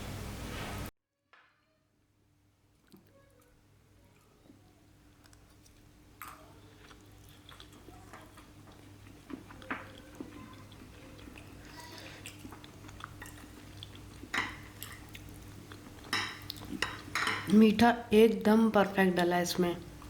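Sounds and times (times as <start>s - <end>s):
soft chewing: 2.7s - 17.6s
cutlery clicking against dish: 16.1s - 17.5s.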